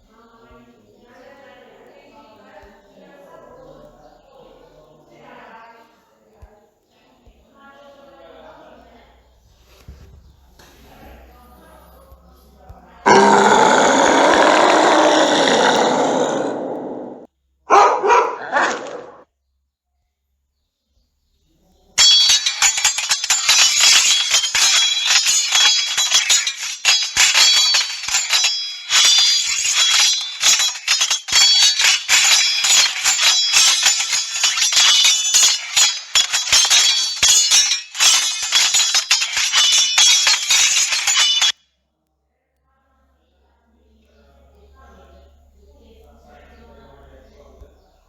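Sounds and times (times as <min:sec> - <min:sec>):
dog-like animal cries: 0:13.1 - 0:19.2
bright clinking and jingling: 0:22.0 - 0:41.6.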